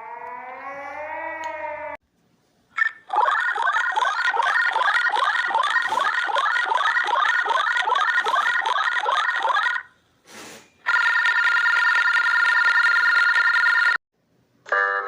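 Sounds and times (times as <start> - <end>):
alarm rising sweeps: 0.0 - 2.0
steady high alarm tone: 10.8 - 14.0.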